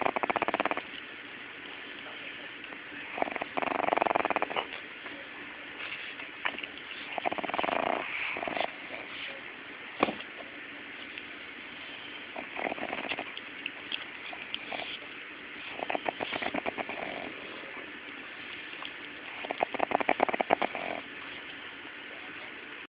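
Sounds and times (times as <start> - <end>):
puppy snoring: 0.0 - 0.9, 3.0 - 4.7, 6.4 - 9.4, 12.2 - 13.4, 14.3 - 15.0, 15.6 - 17.9, 19.3 - 21.2.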